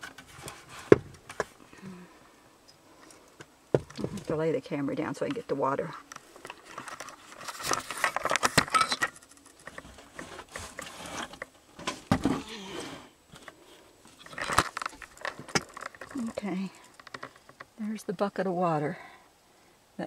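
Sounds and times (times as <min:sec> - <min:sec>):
rustling: 0:00.0 - 0:04.4, 0:06.0 - 0:17.8
knocks on wooden boards: 0:00.9 - 0:01.2
camera being handled: 0:06.1 - 0:11.5, 0:14.1 - 0:16.2.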